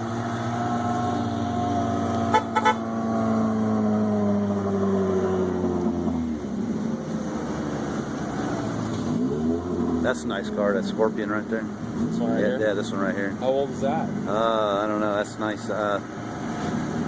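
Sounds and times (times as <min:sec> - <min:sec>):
car horn toots: 0:02.2 - 0:02.8.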